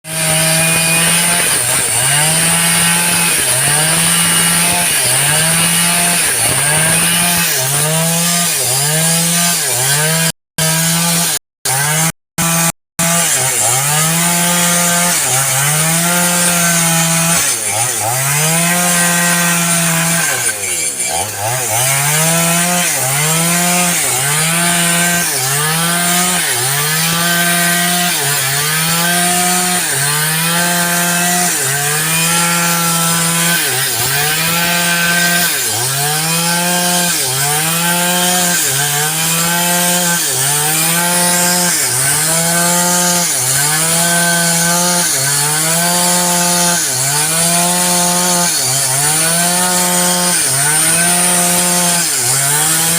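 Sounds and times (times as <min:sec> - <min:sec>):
small engine revving: 0:00.1 - 0:52.9.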